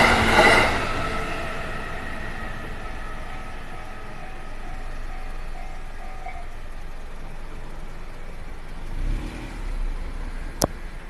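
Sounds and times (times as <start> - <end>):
level crossing warning bell: 0.0 - 7.0
road traffic noise: 0.0 - 11.0
vehicle driving over crossing: 0.0 - 11.0.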